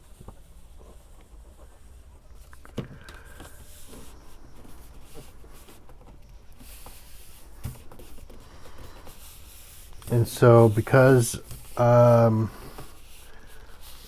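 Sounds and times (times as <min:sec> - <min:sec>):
paper rustling: 0:00.1 - 0:14.0.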